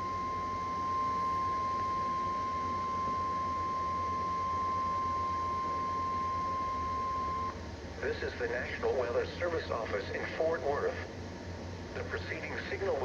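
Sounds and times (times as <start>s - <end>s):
steady high alarm tone: 0.0s - 7.6s.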